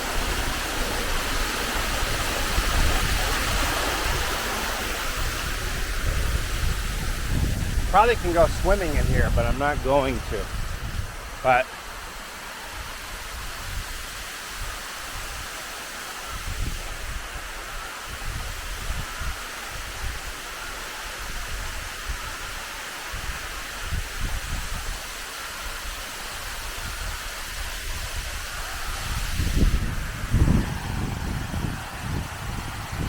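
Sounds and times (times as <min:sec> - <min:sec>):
wind buffeting microphone: 0:00.0 - 0:11.6, 0:12.7 - 0:15.5, 0:18.1 - 0:20.4, 0:23.1 - 0:25.0, 0:26.4 - 0:33.0
waterfall pouring into pool: 0:00.0 - 0:33.0.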